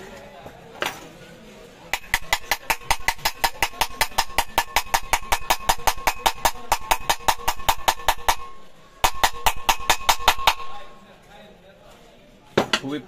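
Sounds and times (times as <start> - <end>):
rapid metallic tapping: 1.9 - 10.8.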